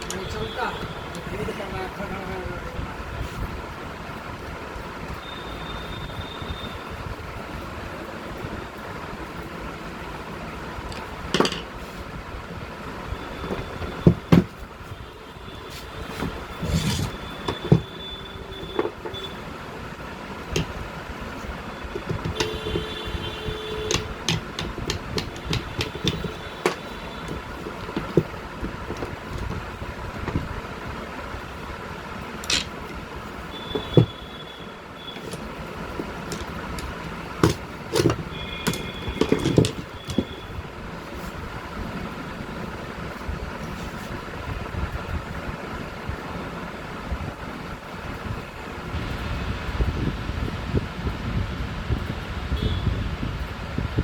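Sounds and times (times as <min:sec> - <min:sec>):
steady background noise: 0:00.0 - 0:54.0
tools and metal parts knocking: 0:10.9 - 0:11.8, 0:16.2 - 0:19.3, 0:20.4 - 0:30.5, 0:32.4 - 0:33.0, 0:33.7 - 0:34.2, 0:35.1 - 0:40.5.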